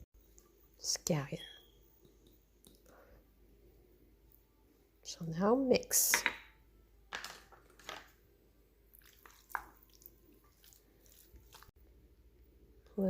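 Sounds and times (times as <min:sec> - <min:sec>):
wet stirring in a bowl: 0:08.9 - 0:11.8.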